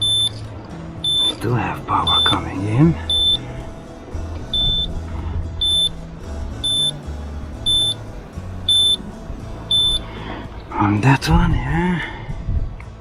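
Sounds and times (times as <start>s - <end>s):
high electronic beeps: 0.0s - 5.0s, 5.6s - 10.7s
background music with bass line: 0.0s - 13.0s.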